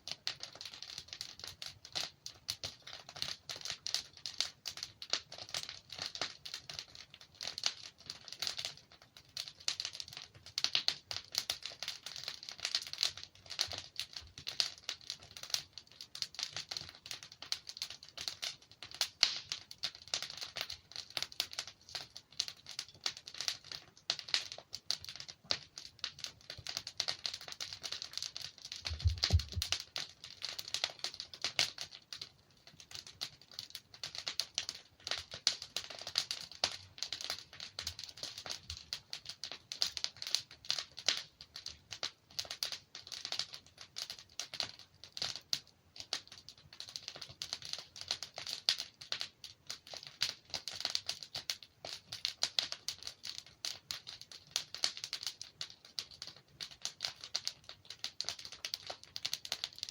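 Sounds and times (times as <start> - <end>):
wood fire crackling: 0.0 - 59.9
soft low thump: 28.9 - 29.7.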